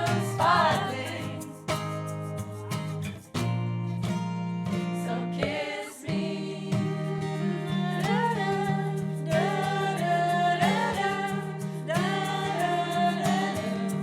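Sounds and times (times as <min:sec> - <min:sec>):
voices singing: 0:00.0 - 0:01.8, 0:04.9 - 0:14.0
strummed acoustic guitar: 0:00.0 - 0:14.0.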